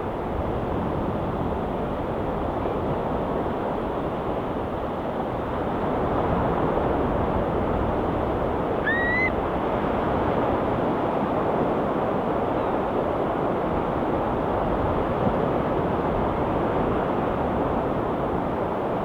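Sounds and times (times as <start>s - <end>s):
seabird call: 8.8s - 9.5s.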